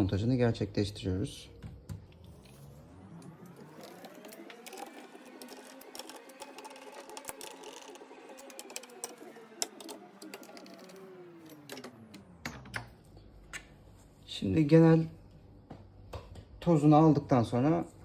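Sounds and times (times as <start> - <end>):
small electric motor whirring: 2.3 - 12.2.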